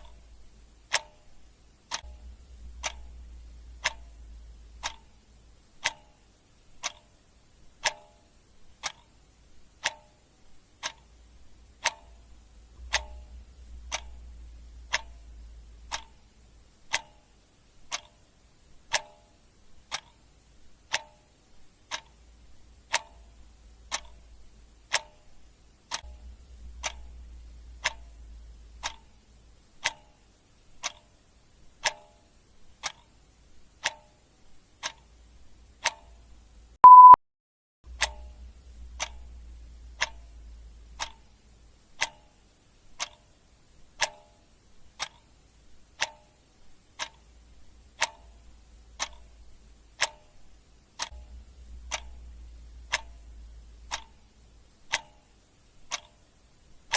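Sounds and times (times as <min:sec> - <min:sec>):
clock ticking: 0:00.0 - 0:37.2, 0:37.9 - 0:56.9
short electronic beep: 0:36.8 - 0:37.2.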